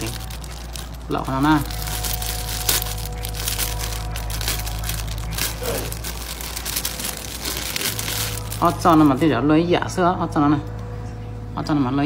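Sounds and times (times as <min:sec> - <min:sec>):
plastic crinkling: 0:00.0 - 0:09.4
steady low hum: 0:00.0 - 0:12.0.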